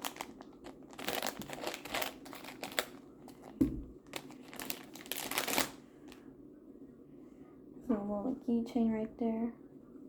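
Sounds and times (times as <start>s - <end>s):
plastic packaging crinkling: 0.0s - 6.2s.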